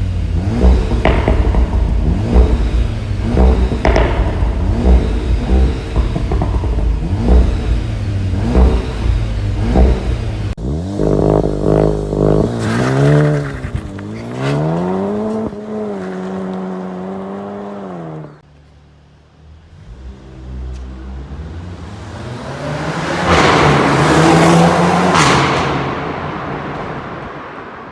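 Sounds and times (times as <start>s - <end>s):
car engine revving: 0.0s - 18.4s, 19.6s - 27.0s
loud thumping: 0.4s - 10.6s.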